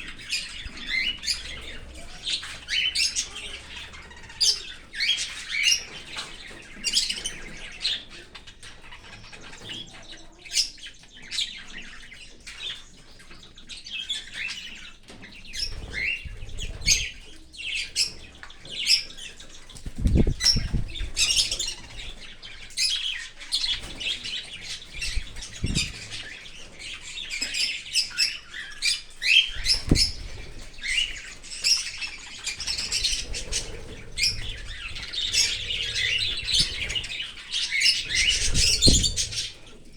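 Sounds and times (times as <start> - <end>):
cockatiels chirping: 0.0 - 39.9
low thuds: 25.0 - 26.0.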